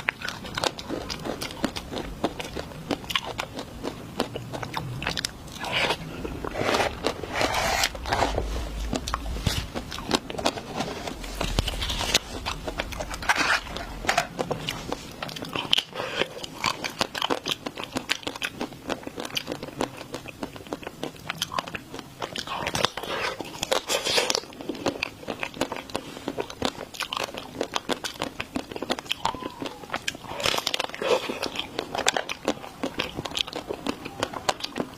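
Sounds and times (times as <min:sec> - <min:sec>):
crunching and chewing: 0:00.0 - 0:34.9
slurping: 0:05.5 - 0:16.6.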